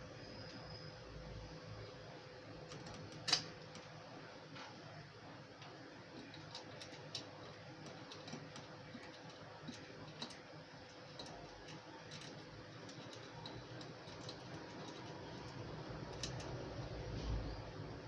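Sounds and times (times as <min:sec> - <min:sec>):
small irregular clicks: 0:02.7 - 0:04.0, 0:05.6 - 0:17.0.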